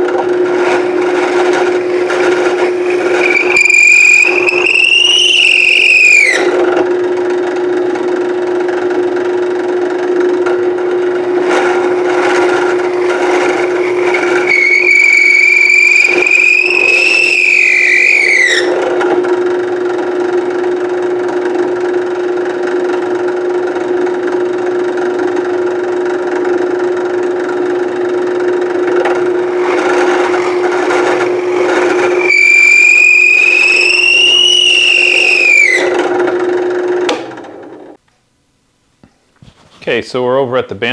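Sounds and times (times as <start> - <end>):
power tool humming: 0.0 - 7.0, 10.4 - 19.5, 28.8 - 38.0
high whine with overtones: 0.2 - 6.8, 10.7 - 19.4, 29.0 - 37.2.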